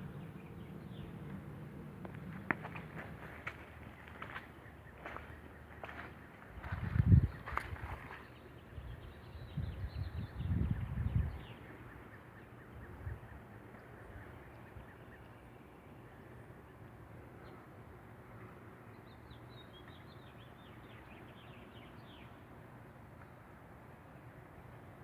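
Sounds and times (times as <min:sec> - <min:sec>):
faint outdoor hiss: 0:00.0 - 0:25.0
bird chirping: 0:02.7 - 0:17.8, 0:18.9 - 0:23.4.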